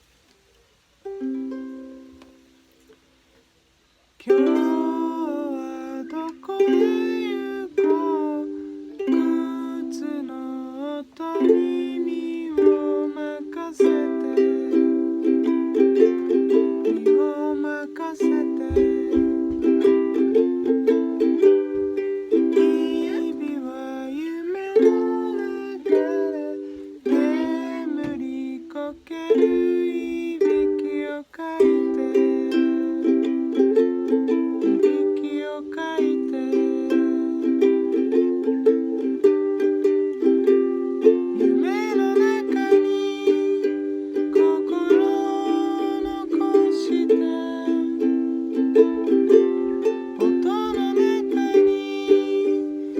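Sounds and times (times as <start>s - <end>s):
ukulele sliding notes: 1.0s - 2.6s, 4.2s - 52.9s
ukulele strumming chords: 1.0s - 3.0s, 4.2s - 52.9s.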